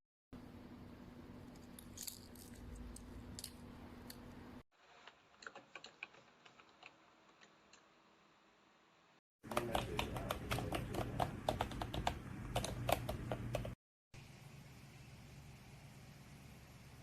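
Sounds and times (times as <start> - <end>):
keyboard keystrokes: 9.5 - 13.8.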